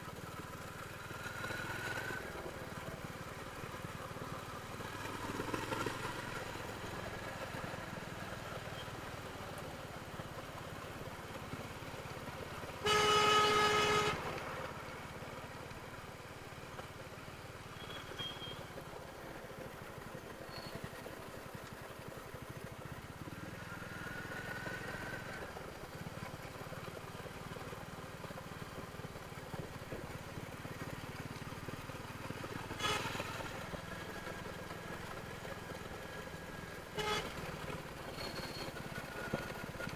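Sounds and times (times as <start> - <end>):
motorcycle engine running: 0.0 - 39.9
vehicle horn: 12.8 - 14.3, 32.8 - 33.4, 37.0 - 37.4.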